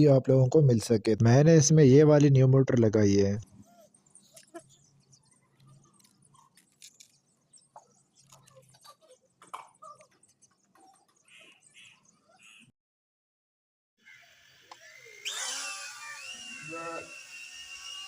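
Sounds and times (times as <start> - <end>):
small chirps: 3.5 - 12.7
faint clicks and ticks: 7.8 - 11.6.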